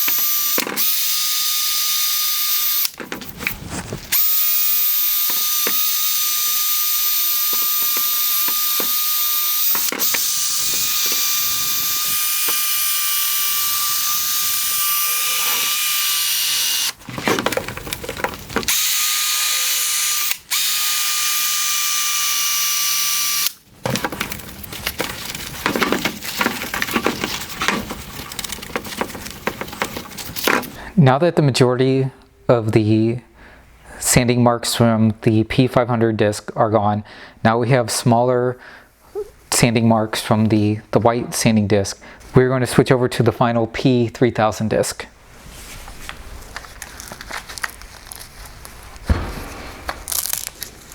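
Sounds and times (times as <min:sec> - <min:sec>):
electric drill sanding whine: 0:00.0 - 0:02.9, 0:04.2 - 0:17.0, 0:18.7 - 0:23.5
scratchy handling and rubbing: 0:03.2 - 0:04.1, 0:24.1 - 0:30.8, 0:45.3 - 0:50.9.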